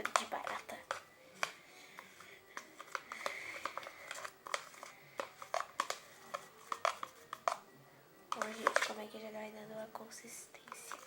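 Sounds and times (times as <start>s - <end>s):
utensil stirring thick mixture: 0.0s - 7.6s, 8.3s - 9.0s
utensil scraping container: 8.3s - 9.0s.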